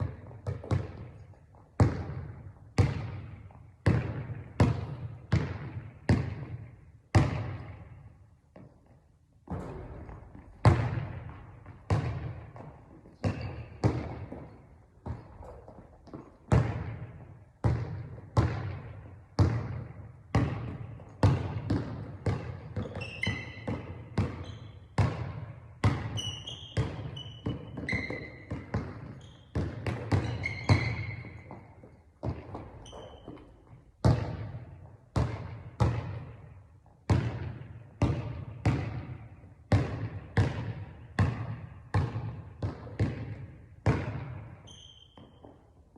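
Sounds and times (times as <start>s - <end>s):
basketball bouncing on hard court: 0.0s - 45.9s
shoe squeaks: 13.3s - 13.8s, 22.8s - 23.8s, 24.4s - 25.0s, 26.1s - 32.0s, 32.7s - 33.9s, 44.6s - 45.9s.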